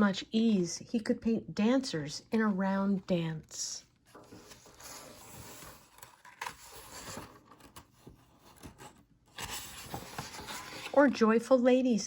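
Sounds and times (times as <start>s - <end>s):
book page turning: 4.0s - 11.2s.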